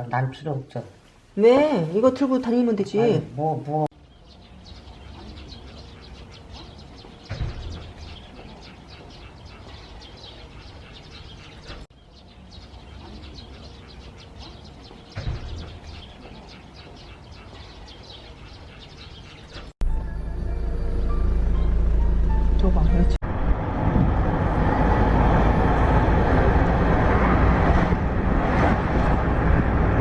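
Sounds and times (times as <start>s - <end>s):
small birds chirping: 1.4s - 19.8s.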